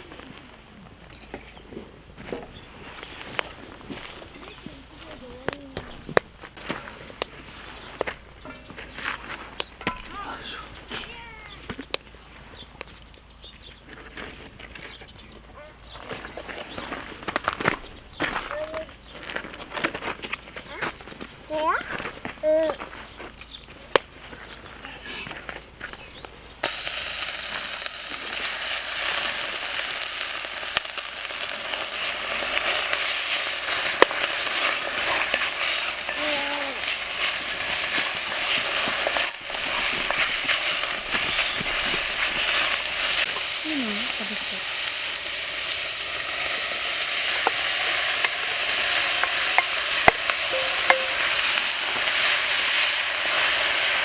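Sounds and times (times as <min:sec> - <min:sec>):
food sizzling in pan: 0:26.6 - 0:54.0.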